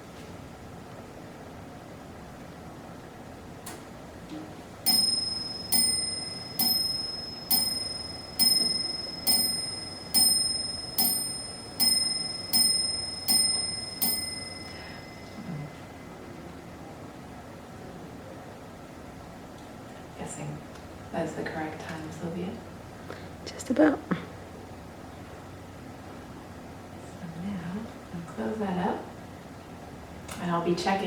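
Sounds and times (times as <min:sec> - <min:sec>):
clock bell striking: 0:04.9 - 0:16.4.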